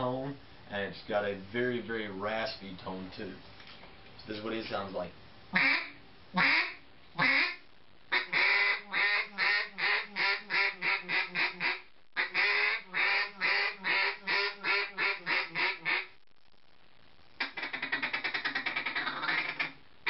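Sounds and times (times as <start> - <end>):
raspy duck call quacks: 5.6 - 16.1, 17.4 - 19.8.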